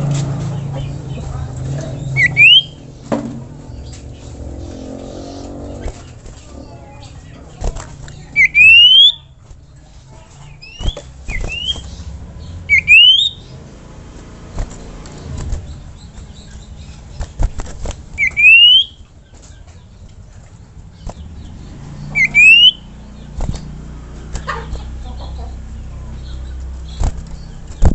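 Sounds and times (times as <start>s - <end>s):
bird rising whistled calls: 2.2s - 2.8s, 8.4s - 9.2s, 12.7s - 13.4s, 18.2s - 19.0s, 22.1s - 22.8s.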